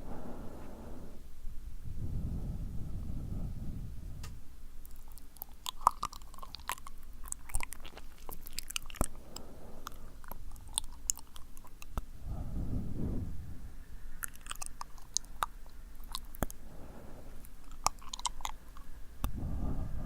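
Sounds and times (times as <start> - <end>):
low breathy blowing: 0.0 - 4.5, 9.1 - 10.2, 12.1 - 14.2, 16.6 - 17.7, 19.2 - 20.0
lip smacks and tongue clicks: 4.8 - 12.1, 14.2 - 16.8, 17.4 - 19.4.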